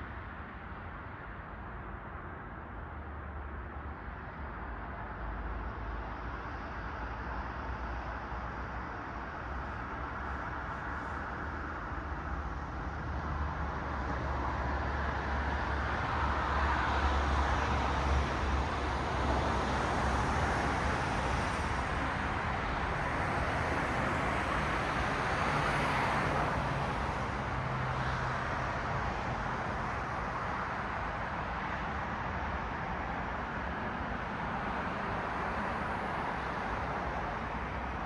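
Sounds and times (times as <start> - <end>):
cars passing: 19.7 - 30.2.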